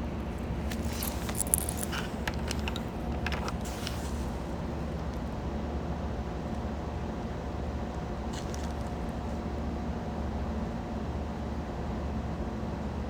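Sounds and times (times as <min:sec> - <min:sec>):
handling clicks and taps: 0:00.3 - 0:04.0.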